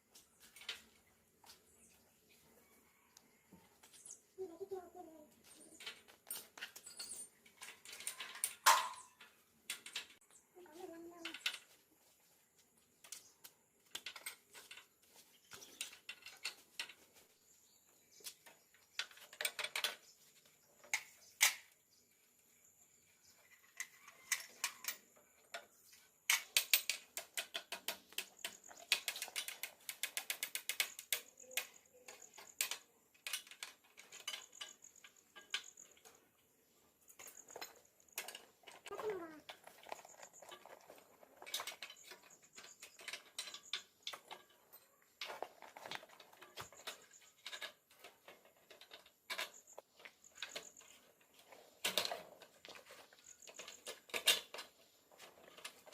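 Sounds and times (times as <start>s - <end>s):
metallic clicks and rattles: 5.4s - 10.4s, 13.0s - 17.3s, 18.1s - 21.8s, 23.4s - 36.4s, 37.0s - 55.9s.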